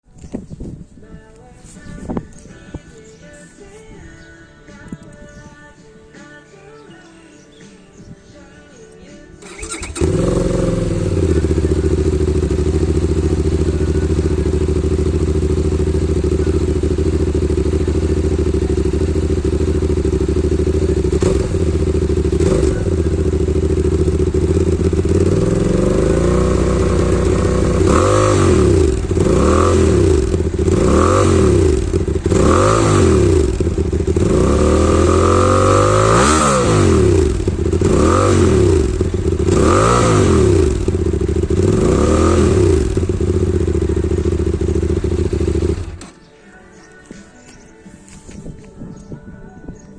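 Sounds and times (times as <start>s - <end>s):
motorcycle engine idling: 9.4s - 46.2s
motorcycle throttle blips: 9.4s - 46.2s.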